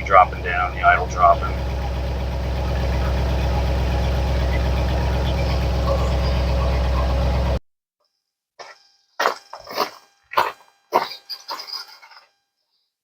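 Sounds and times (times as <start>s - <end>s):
engine idling: 0.0s - 7.6s
dog barking: 5.2s - 7.1s.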